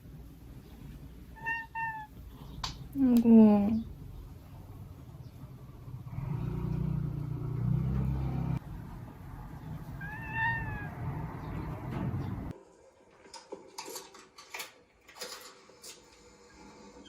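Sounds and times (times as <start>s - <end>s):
cat meowing: 1.4s - 2.2s, 10.0s - 11.1s.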